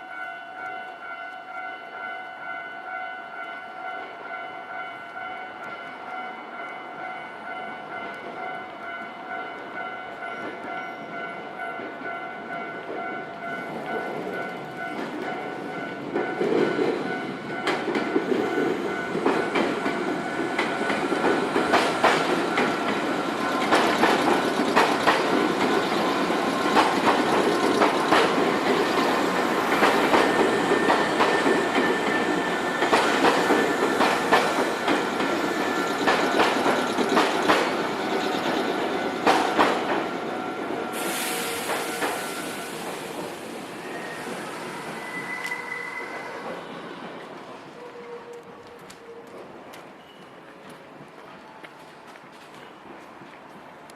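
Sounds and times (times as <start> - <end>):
level crossing warning bell: 0.0 - 40.8
train wheels clacking over rail joints: 16.1 - 43.4.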